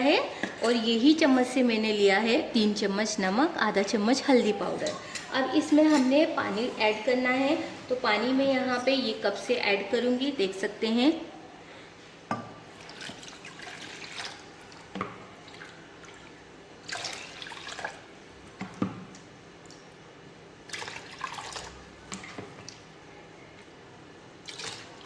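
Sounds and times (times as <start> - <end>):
water pouring into a pan: 12.7 - 18.2, 20.7 - 22.4, 24.4 - 25.0.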